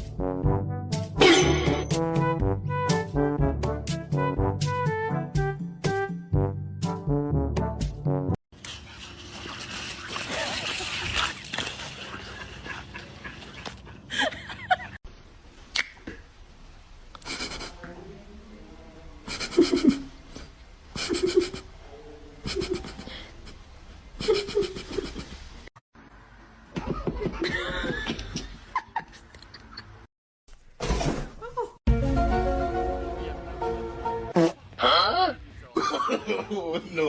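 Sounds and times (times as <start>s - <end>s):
people laughing: 11.9s - 15.0s, 19.3s - 20.1s, 21.0s - 21.6s, 22.4s - 23.5s, 24.2s - 25.4s, 26.8s - 30.0s, 35.7s - 37.0s.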